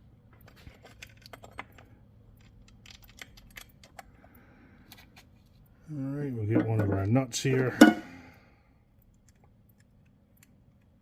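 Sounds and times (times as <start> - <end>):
small parts clicking: 0.4 - 5.1.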